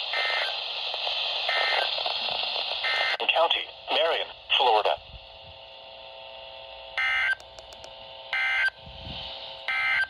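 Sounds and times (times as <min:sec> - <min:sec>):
radio background hiss: 0:00.0 - 0:06.7.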